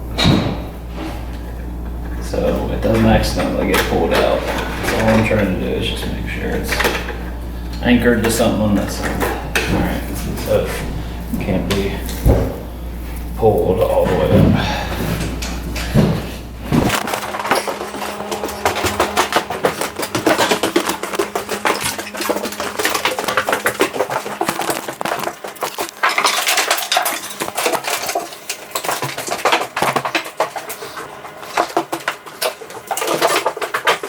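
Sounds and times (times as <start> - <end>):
steady low hum: 0.0 - 28.6
metal objects clinking and rattling: 2.4 - 5.5, 16.8 - 34.0.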